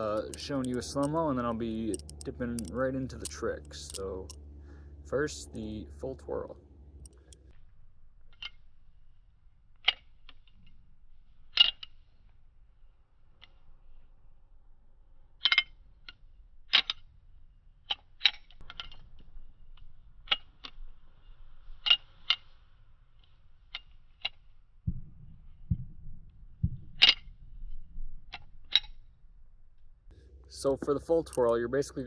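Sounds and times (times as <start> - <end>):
butterfly knife handles clacking: 0.0 - 4.4, 30.8 - 31.9
dull low thumps: 24.8 - 31.0.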